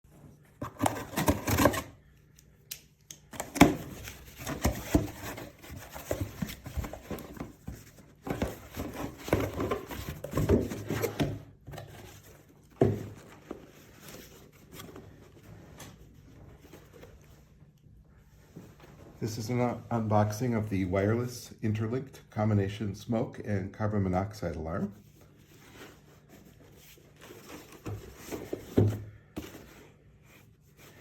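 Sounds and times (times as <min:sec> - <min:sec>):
packaging rustling: 0:00.6 - 0:02.0, 0:03.4 - 0:15.2.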